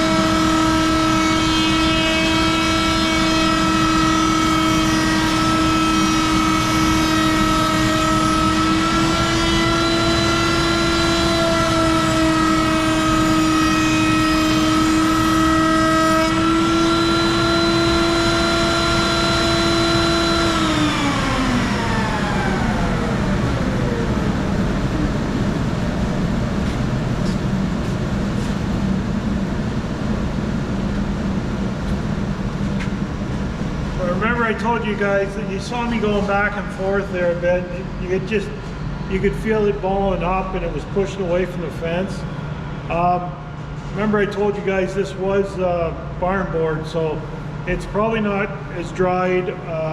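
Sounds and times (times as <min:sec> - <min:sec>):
router cutting wood: 0:00.0 - 0:24.4
router whining: 0:00.0 - 0:25.4
steady low hum: 0:00.0 - 0:49.9.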